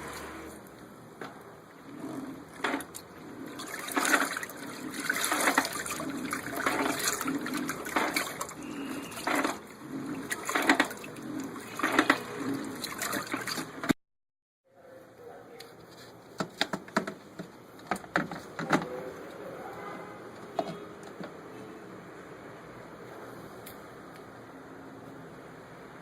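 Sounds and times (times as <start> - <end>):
water sloshing in washing machine: 1.6 - 14.0.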